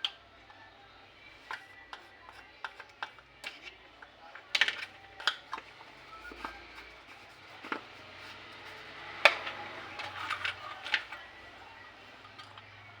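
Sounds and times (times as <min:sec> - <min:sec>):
tools clicking and scraping: 0:01.4 - 0:13.0.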